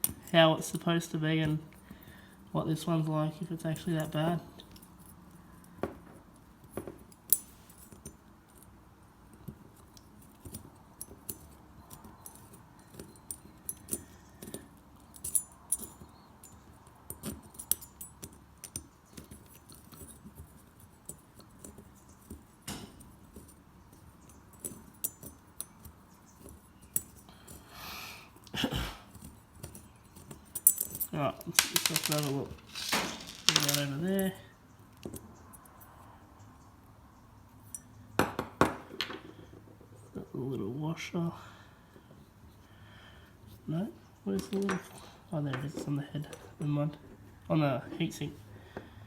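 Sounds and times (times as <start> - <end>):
metal parts and tools clinking: 29.1 - 34.3.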